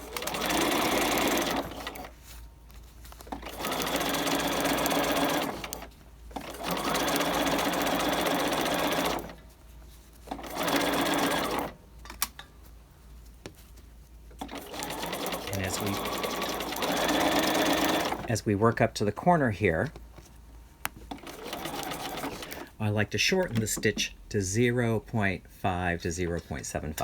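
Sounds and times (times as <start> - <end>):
sewing machine stitching: 0.0 - 2.1, 3.3 - 9.4, 10.3 - 11.8, 14.4 - 18.3, 21.1 - 22.7.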